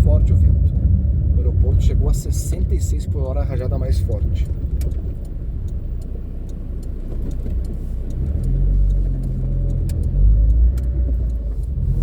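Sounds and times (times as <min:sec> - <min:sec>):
car engine and road rumble: 0:00.0 - 0:12.0
faint ticks: 0:04.4 - 0:11.8.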